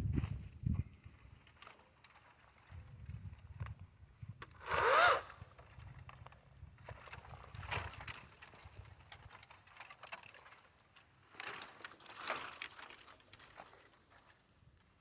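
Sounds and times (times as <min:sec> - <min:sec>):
dry brush rustling and crackling: 0:05.6 - 0:15.0.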